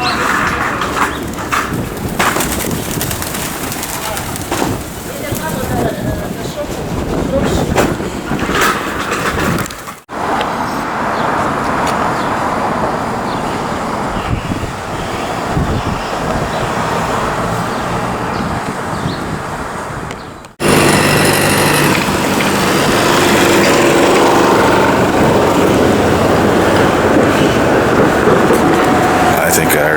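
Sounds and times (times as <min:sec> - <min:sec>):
city street traffic: 0:00.0 - 0:29.9
subway train humming: 0:10.2 - 0:18.3, 0:22.0 - 0:29.9.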